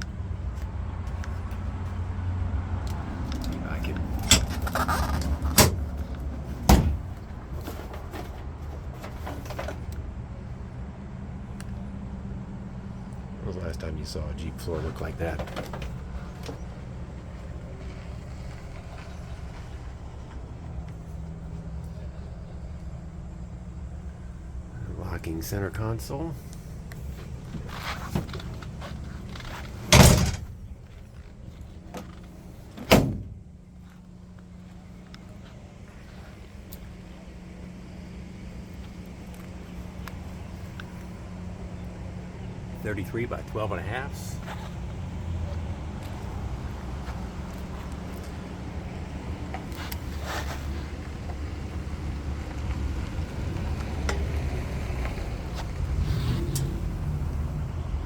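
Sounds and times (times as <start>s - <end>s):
car door slamming shut: 4.2s - 7.2s, 29.8s - 30.6s, 32.8s - 33.4s.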